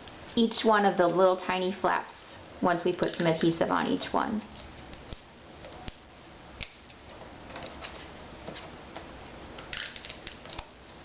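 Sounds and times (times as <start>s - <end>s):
paper handling: 7.4s - 8.8s.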